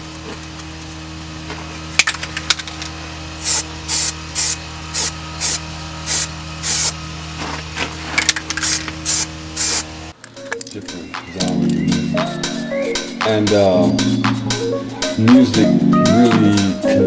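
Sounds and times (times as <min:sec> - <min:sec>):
spray can hissing: 0:03.4 - 0:06.9, 0:11.7 - 0:17.0
spray can clicks: 0:11.4 - 0:17.0.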